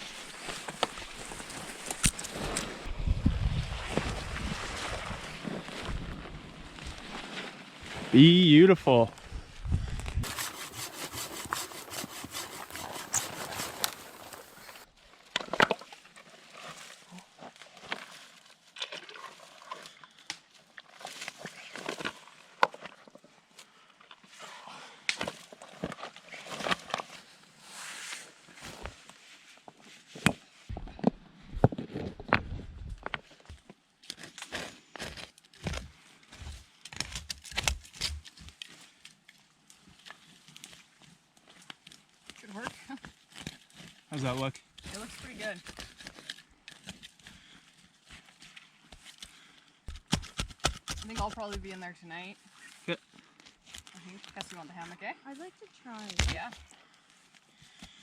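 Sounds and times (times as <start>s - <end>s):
rustling and crackling brush: 0.0s - 8.2s, 9.8s - 14.9s, 37.5s - 58.0s
twigs knocking and snapping: 0.6s - 2.8s, 34.0s - 39.2s, 48.9s - 51.7s, 56.0s - 56.7s
wood and brush snapping: 0.6s - 2.8s, 10.2s - 14.8s, 36.8s - 38.8s, 49.9s - 51.6s, 56.0s - 56.6s
hand saw cutting wood: 10.2s - 14.9s, 49.9s - 51.7s.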